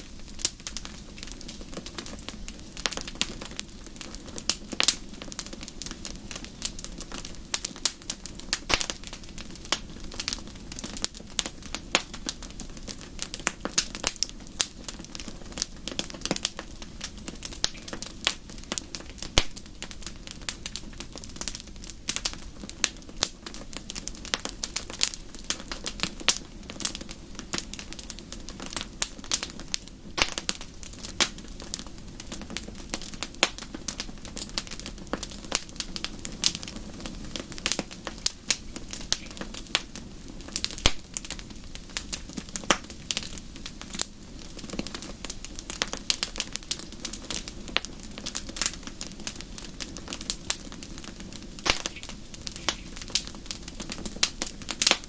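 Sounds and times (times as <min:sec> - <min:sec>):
low rumble of burning fire: 0:00.0 - 0:55.0
wood fire pops and snaps: 0:00.0 - 0:55.0.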